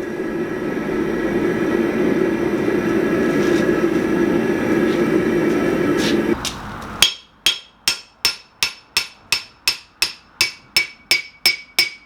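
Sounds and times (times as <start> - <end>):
hammer striking steel on anvil: 6.4 - 12.0.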